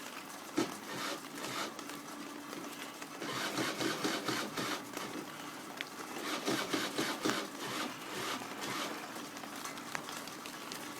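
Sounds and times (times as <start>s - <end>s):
moped electric starter cranking: 3.2s - 4.8s, 6.2s - 8.9s.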